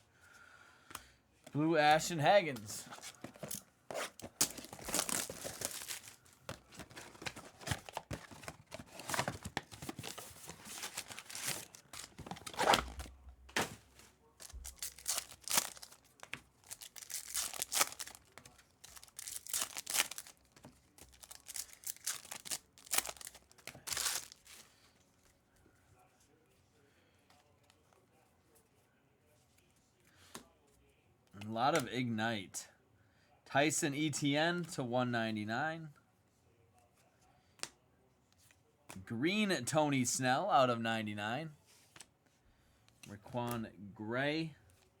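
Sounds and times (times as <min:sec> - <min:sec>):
wrappers tearing and crinkling: 0:02.8 - 0:13.8, 0:14.4 - 0:24.6.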